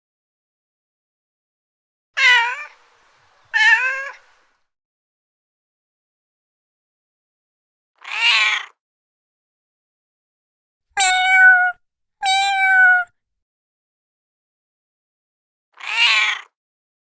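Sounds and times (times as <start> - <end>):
cat meowing: 2.2 - 2.8, 3.5 - 4.2, 8.0 - 8.8, 11.0 - 13.1, 15.8 - 16.6.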